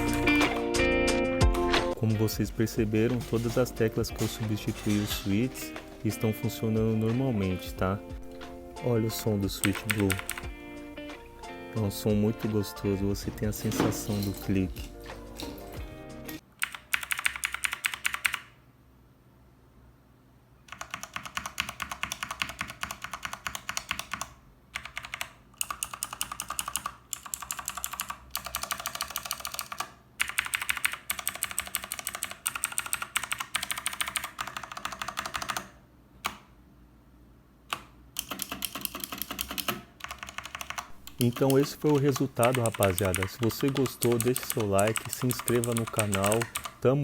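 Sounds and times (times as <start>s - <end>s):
fast mechanical keyboard typing: 0.0s - 0.6s, 9.3s - 10.5s, 16.6s - 18.5s, 20.7s - 35.8s, 38.2s - 47.0s.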